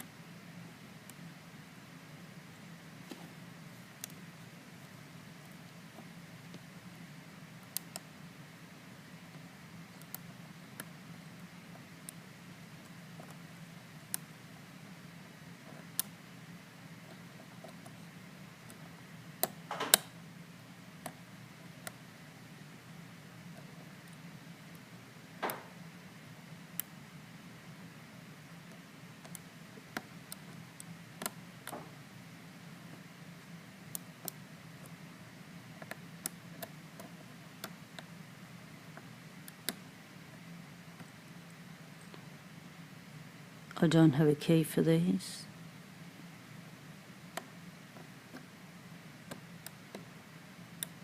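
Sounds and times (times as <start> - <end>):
faint steady hum: 0.0 - 51.0.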